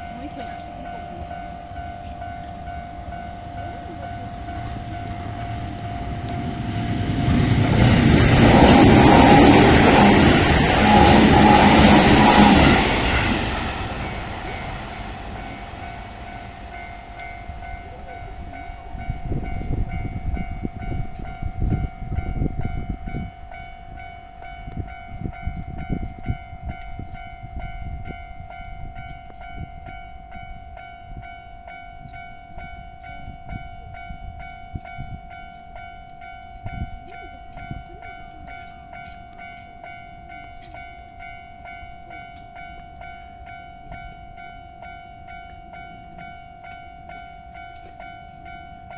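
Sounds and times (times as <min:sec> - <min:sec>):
train wheels clacking on rails: 0:00.0 - 0:27.4
level crossing alarm bell: 0:00.0 - 0:48.9.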